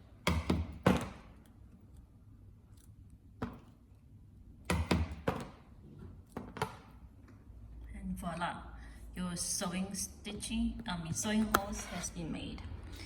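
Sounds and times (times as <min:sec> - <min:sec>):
mallet striking leather chisel: 0:00.2 - 0:01.3, 0:04.7 - 0:05.6.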